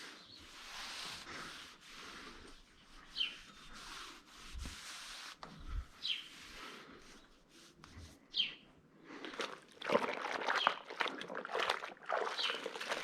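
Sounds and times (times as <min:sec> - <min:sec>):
bird chirps: 0:06.0 - 0:06.3, 0:08.3 - 0:08.7
wet rubbing and splashing: 0:09.1 - 0:13.0.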